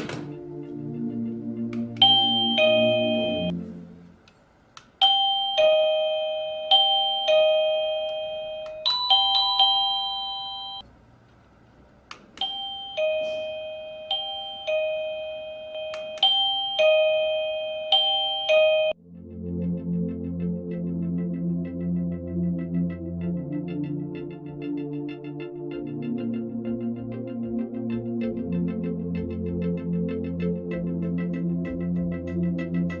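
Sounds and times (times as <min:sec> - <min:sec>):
doorbell ding-dong chime: 0:02.0 - 0:03.5, 0:05.0 - 0:10.8, 0:12.4 - 0:19.0
higher-pitched chime phrase: 0:02.0 - 0:03.6, 0:05.0 - 0:10.8, 0:12.5 - 0:19.0.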